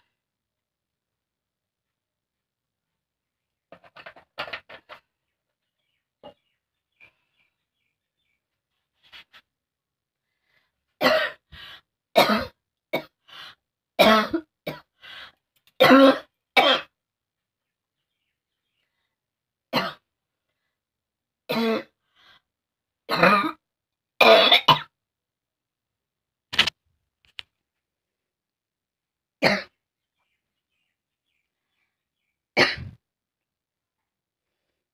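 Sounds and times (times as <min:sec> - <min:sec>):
person coughing: 0:11.0 - 0:11.4, 0:12.2 - 0:13.2, 0:14.0 - 0:14.9, 0:23.1 - 0:23.6, 0:24.2 - 0:24.9, 0:29.4 - 0:29.7, 0:32.6 - 0:33.0
person clearing throat: 0:23.1 - 0:23.6, 0:24.2 - 0:24.9, 0:29.4 - 0:29.8, 0:32.6 - 0:33.0.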